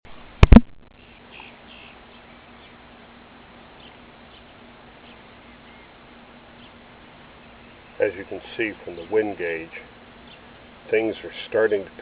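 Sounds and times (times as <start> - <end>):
faint bird chirps: 1.0 - 8.1, 10.2 - 10.6.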